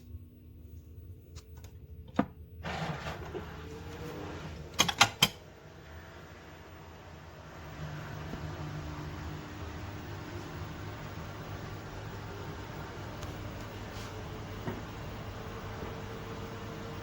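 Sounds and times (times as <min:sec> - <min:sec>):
dishwasher running hum: 0:00.0 - 0:17.0
dishwasher clicks: 0:04.7 - 0:05.4.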